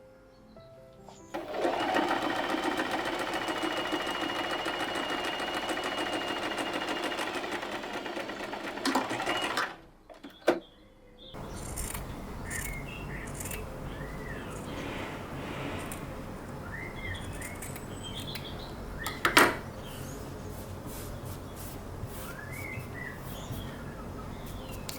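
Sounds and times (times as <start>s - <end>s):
small electric motor ticking: 1.4s - 9.6s.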